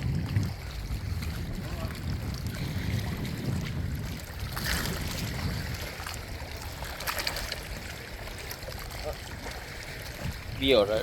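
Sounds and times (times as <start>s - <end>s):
outdoor wind: 0.0s - 11.0s
water noise: 0.0s - 11.0s.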